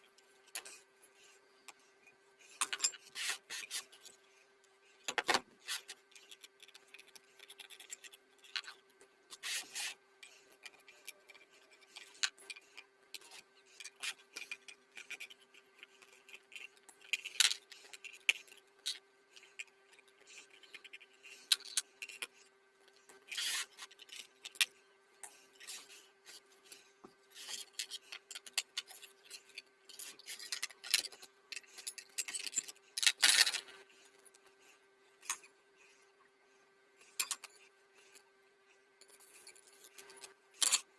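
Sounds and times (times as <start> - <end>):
faint hum: 0.0 - 40.9
scraping and rubbing strokes: 0.5 - 4.5, 9.3 - 17.2, 17.8 - 28.2.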